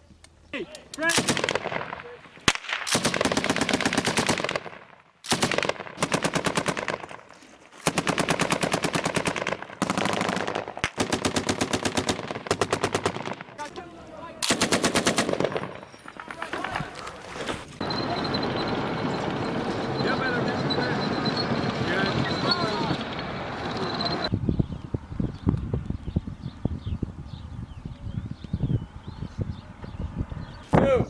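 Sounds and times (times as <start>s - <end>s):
automatic gunfire bursts: 1.0s - 13.8s, 14.4s - 16.0s.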